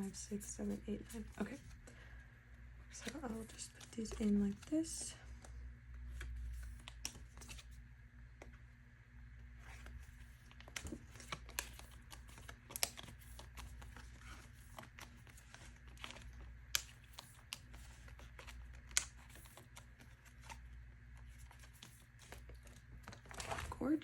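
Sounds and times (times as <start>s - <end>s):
plastic sleeves crinkling: 9.6s - 24.0s.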